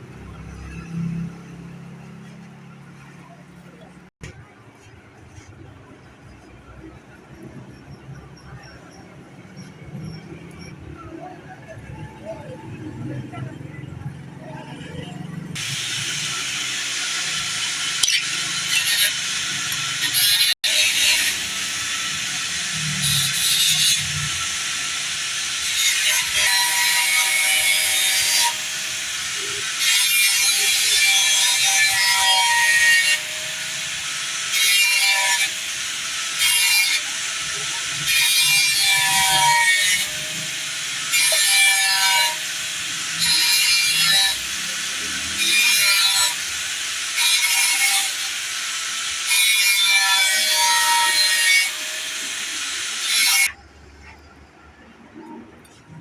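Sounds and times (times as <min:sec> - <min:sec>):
rasping scraping strokes: 0:15.6 - 0:53.5.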